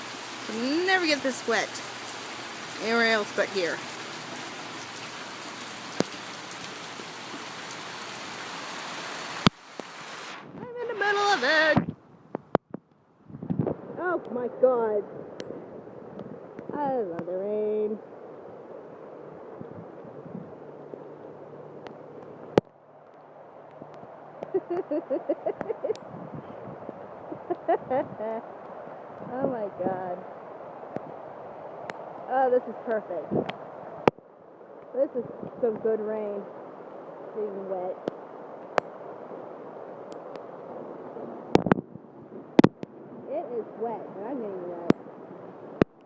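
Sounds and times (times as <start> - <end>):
rain falling: 0.0 - 11.9, 13.6 - 46.0.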